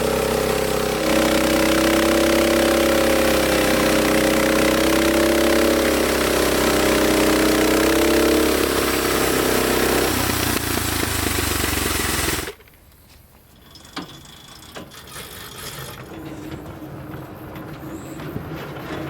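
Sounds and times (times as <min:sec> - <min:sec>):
band sawmill engine running: 0:00.0 - 0:12.7, 0:13.4 - 0:19.0
sharp clicks and knocks: 0:12.3 - 0:19.0.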